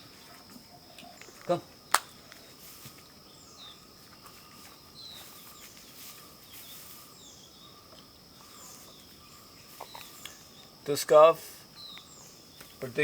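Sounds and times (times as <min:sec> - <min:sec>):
insect drone: 0:00.0 - 0:13.0
bird chirps: 0:03.3 - 0:10.9, 0:11.7 - 0:13.0.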